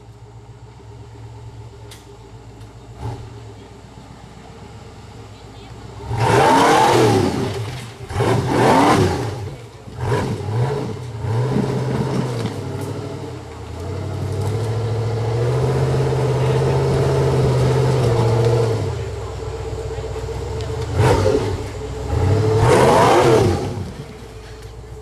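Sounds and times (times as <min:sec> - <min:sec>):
buggy engine revving hard: 0:02.9 - 0:03.7, 0:05.8 - 0:25.0.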